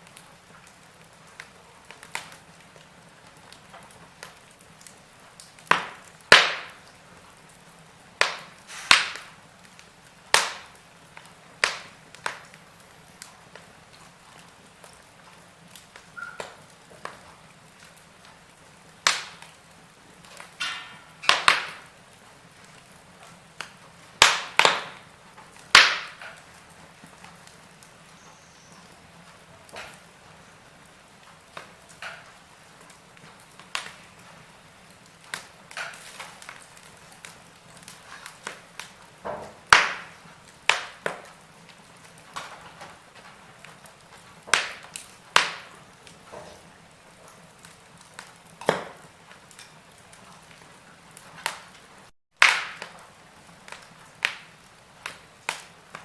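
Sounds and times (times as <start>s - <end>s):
faint steady hiss: 0.0s - 52.1s
wood fire crackling and popping: 0.0s - 56.0s.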